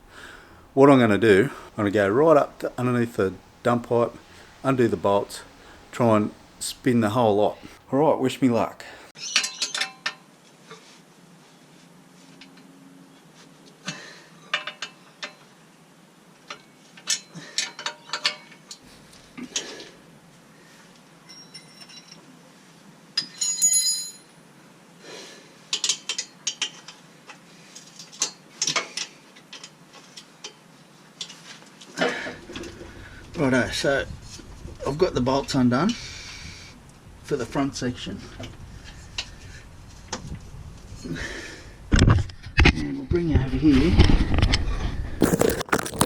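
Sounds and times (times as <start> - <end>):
ringing metal clink: 23.3 - 24.3.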